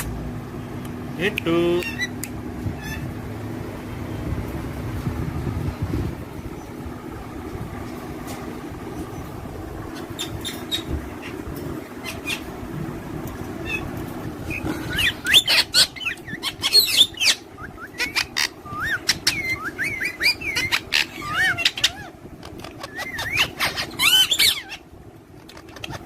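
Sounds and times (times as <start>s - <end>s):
steady low hum: 0.0s - 26.0s
parrots chirping: 1.6s - 3.2s, 8.9s - 12.6s, 13.5s - 26.0s.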